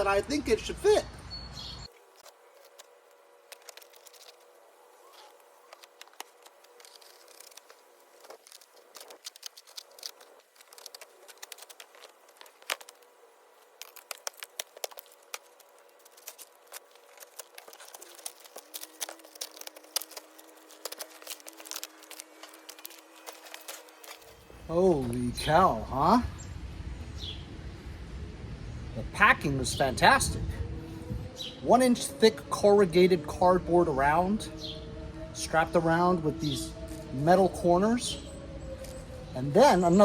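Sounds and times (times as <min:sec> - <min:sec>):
cardboard being cut and torn: 0:03.5 - 0:24.4.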